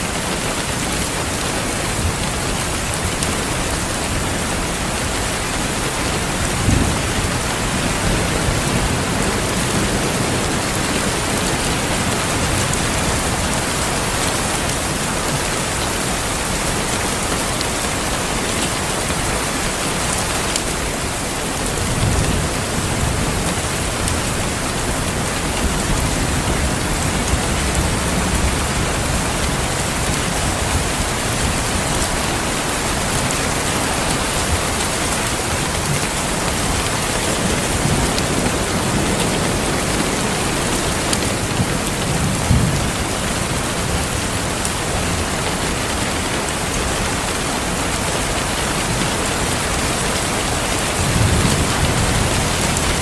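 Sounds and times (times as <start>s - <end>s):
heavy rainfall: 0.0s - 53.0s
thunder rumbling: 33.6s - 45.3s, 49.4s - 53.0s.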